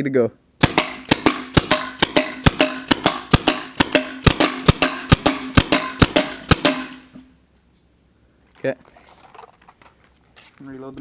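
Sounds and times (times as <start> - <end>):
paintball pistols firing: 0.6 - 7.2.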